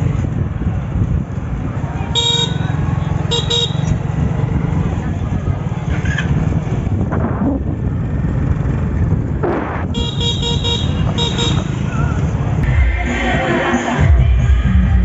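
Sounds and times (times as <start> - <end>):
traffic engine rumble: 0.0 - 15.0
vehicle horn short blasts: 2.2 - 2.7, 3.3 - 3.9, 9.9 - 11.9
music: 12.0 - 15.0.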